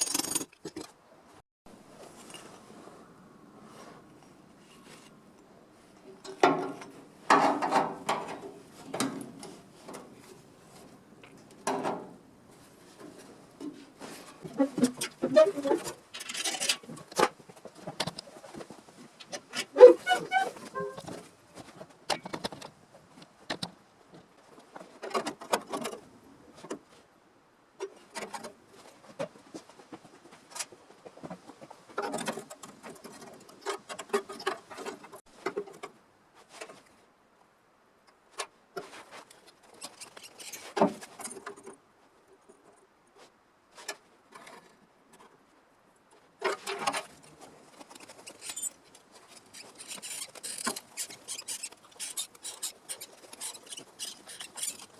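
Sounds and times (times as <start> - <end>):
tools scraping and tapping: 0.0 - 1.0.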